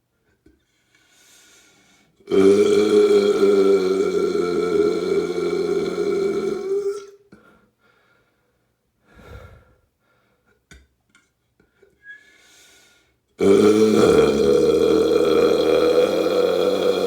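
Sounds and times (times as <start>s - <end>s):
person burping: 2.3s - 7.2s, 13.4s - 17.0s.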